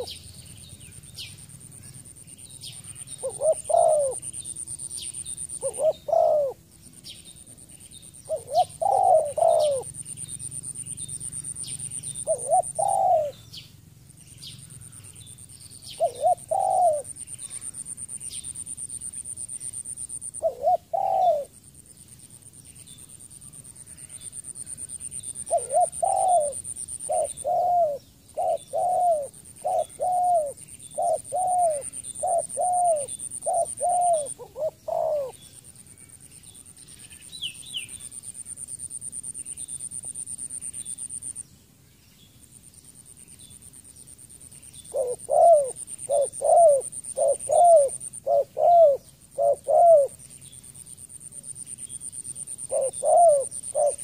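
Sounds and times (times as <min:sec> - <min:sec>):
dove cooing: 0:03.1 - 0:04.4, 0:05.5 - 0:06.6, 0:08.2 - 0:10.0, 0:11.4 - 0:13.4, 0:15.9 - 0:17.8, 0:20.2 - 0:21.6, 0:24.8 - 0:35.4, 0:44.9 - 0:50.2, 0:52.6 - 0:54.0.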